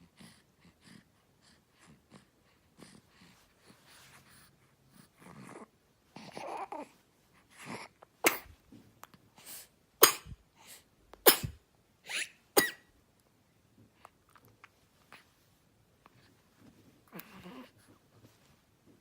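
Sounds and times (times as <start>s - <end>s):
soft breathing: 0.0s - 8.0s.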